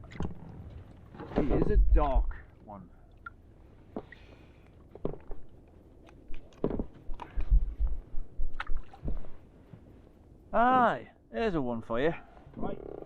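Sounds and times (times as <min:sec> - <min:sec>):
knocks and clicks in inflatable boat: 0:06.1 - 0:09.3.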